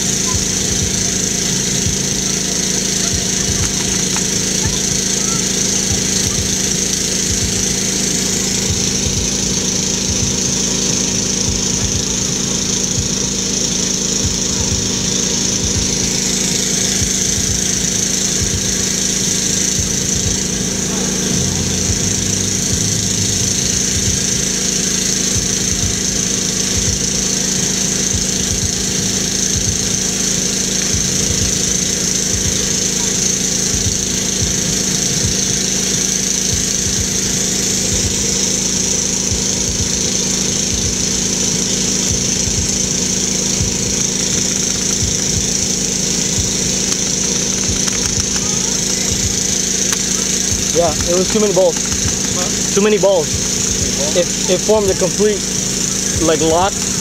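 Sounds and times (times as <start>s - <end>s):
fluttering low rumble: 0.0s - 26.2s
crackling hiss: 0.0s - 57.0s.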